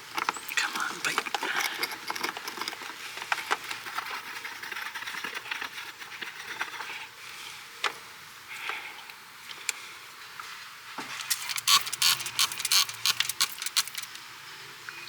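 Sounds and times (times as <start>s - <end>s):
small metal parts clicking: 0.0s - 5.7s, 11.2s - 14.2s.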